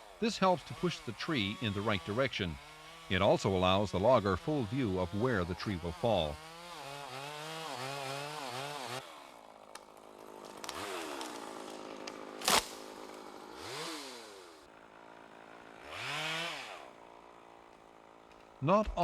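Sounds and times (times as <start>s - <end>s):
chainsaw revving: 0.0s - 19.0s
sharp crack: 9.7s - 13.2s.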